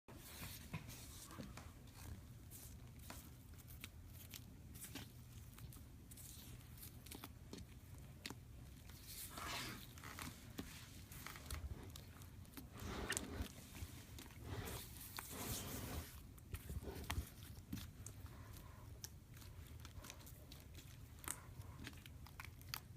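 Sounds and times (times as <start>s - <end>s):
slime squishing rustle: 0.1s - 22.9s
slime crackling and popping: 18.8s - 22.9s.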